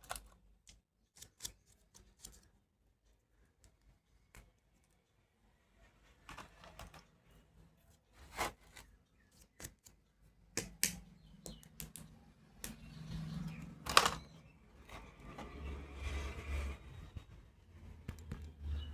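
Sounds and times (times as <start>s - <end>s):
plastic toy tools clicking: 13.6s - 14.4s.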